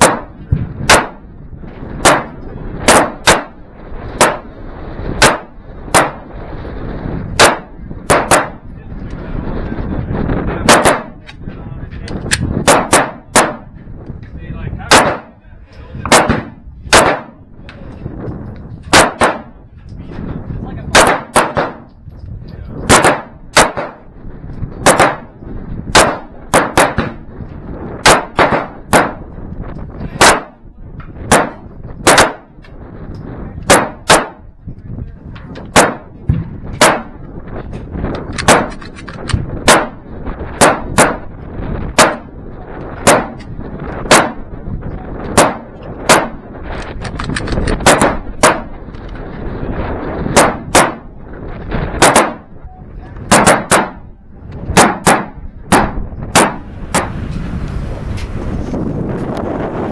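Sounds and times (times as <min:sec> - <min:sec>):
gunshots with short echo: 0:00.0 - 0:01.2, 0:02.0 - 0:03.6, 0:04.2 - 0:04.5, 0:05.2 - 0:06.3, 0:07.4 - 0:08.6, 0:10.6 - 0:11.2, 0:12.3 - 0:13.7, 0:14.9 - 0:15.3, 0:16.0 - 0:17.4, 0:18.9 - 0:19.6, 0:20.9 - 0:21.9, 0:22.9 - 0:24.1, 0:24.8 - 0:25.3, 0:25.9 - 0:27.2, 0:28.0 - 0:29.2, 0:30.2 - 0:30.6, 0:31.3 - 0:32.5, 0:33.7 - 0:34.4, 0:35.7 - 0:37.2, 0:38.3 - 0:40.0, 0:40.6 - 0:41.3, 0:41.9 - 0:42.3, 0:43.0 - 0:44.5, 0:45.3 - 0:46.4, 0:47.0 - 0:48.7, 0:50.3 - 0:51.1, 0:51.9 - 0:52.5, 0:53.3 - 0:54.0, 0:54.7 - 0:57.2.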